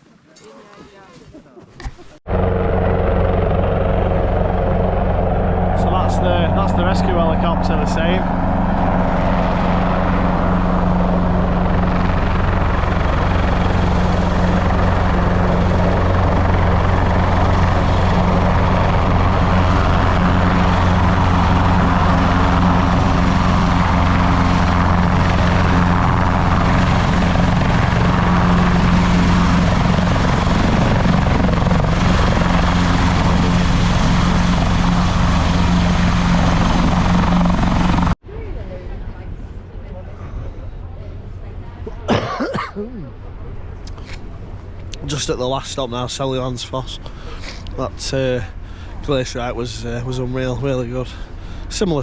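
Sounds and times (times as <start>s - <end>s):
helicopter rotor and engine: 2.2s - 38.2s, 43.2s - 52.0s.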